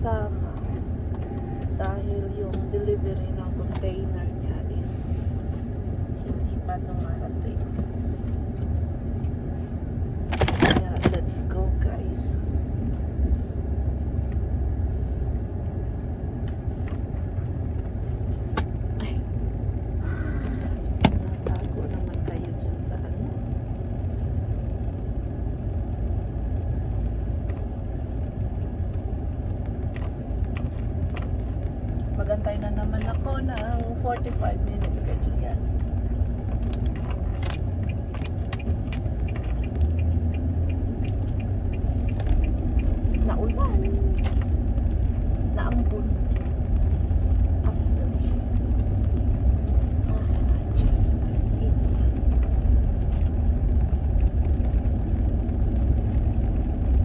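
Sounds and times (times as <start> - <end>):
car engine and road noise: 0.0 - 57.0
light clicks and rattles: 28.8 - 57.0.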